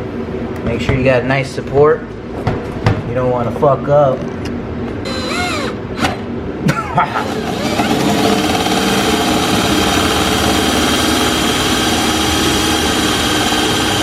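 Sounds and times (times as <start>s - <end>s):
drill clicks: 5.1s - 6.2s
power drill cutting into plastic: 5.1s - 6.2s, 7.3s - 14.0s.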